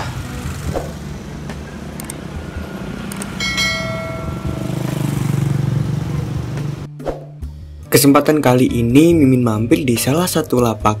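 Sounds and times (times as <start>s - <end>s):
motorcycle engines: 0.0s - 6.9s
street traffic hum: 0.0s - 7.0s
bright bell-like ring: 3.4s - 4.8s.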